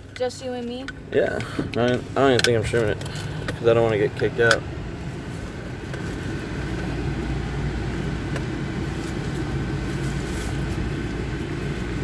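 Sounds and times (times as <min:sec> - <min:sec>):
car engine and road rumble: 0:00.0 - 0:12.0.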